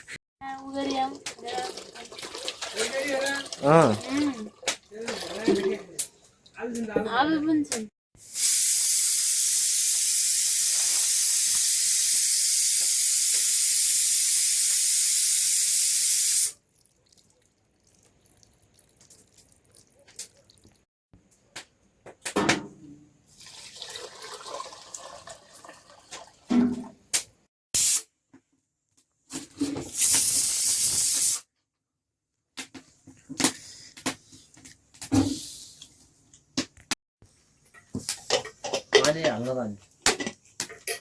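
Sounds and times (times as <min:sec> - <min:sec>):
water running: 0:00.6 - 0:07.2, 0:09.2 - 0:20.9, 0:23.3 - 0:26.5.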